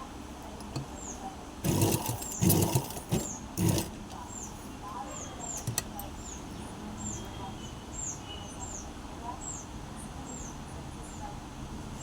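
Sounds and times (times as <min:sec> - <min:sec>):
sewing machine stitching: 0:01.6 - 0:04.0, 0:05.6 - 0:06.0.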